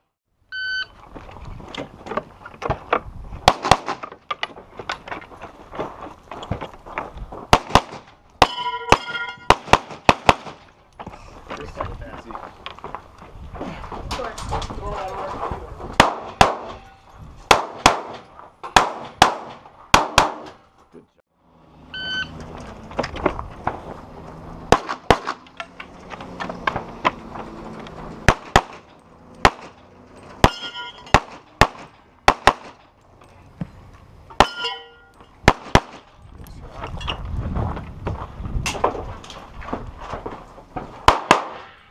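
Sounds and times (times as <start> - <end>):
pistol shots: 3.4 - 4.0, 7.5 - 10.7, 16.0 - 16.8, 17.5 - 20.6, 24.7 - 25.4, 28.2 - 29.8, 30.4 - 32.8, 35.4 - 36.1, 41.0 - 41.8
steel target clanging: 8.4 - 9.6, 28.3 - 32.0, 34.3 - 35.4.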